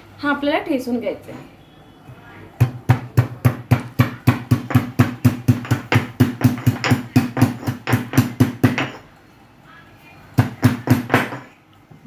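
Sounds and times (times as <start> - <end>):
pestle pounding in a mortar: 2.6 - 9.1, 10.4 - 11.6.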